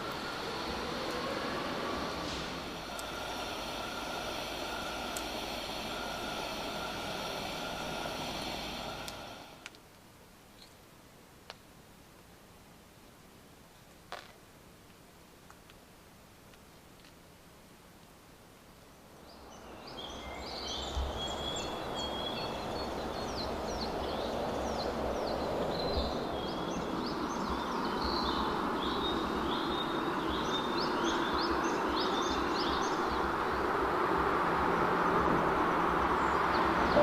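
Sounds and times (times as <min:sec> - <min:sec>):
small birds chirping: 0:35.8 - 0:37.0.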